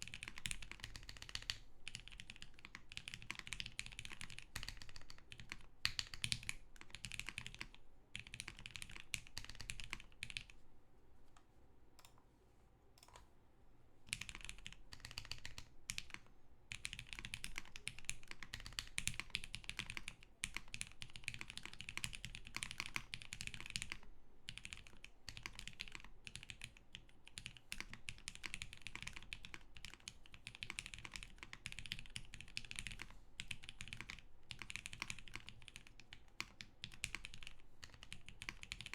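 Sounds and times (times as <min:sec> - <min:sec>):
mechanical keyboard typing: 0:00.0 - 0:10.5, 0:13.0 - 0:13.2, 0:14.1 - 0:38.9.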